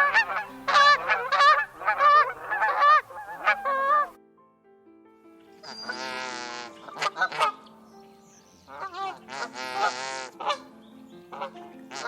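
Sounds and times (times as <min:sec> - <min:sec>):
goose honking: 0:00.0 - 0:04.1, 0:05.7 - 0:07.7, 0:08.7 - 0:10.7, 0:11.3 - 0:12.0.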